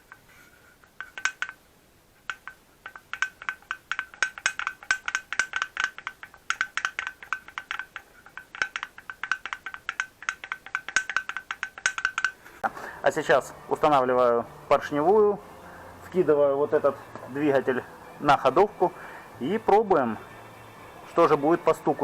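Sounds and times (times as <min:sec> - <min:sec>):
piston knocking in cylinder: 0:00.0 - 0:01.6, 0:02.2 - 0:12.4.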